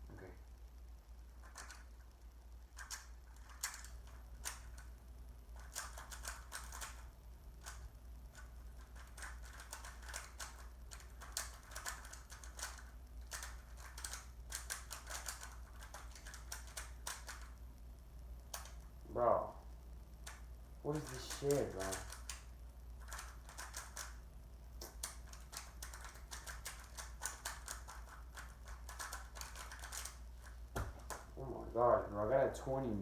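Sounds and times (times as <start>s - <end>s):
puzzle cube plastic clicks: 2.7s - 4.9s, 5.5s - 17.6s, 18.4s - 19.0s, 20.2s - 31.4s.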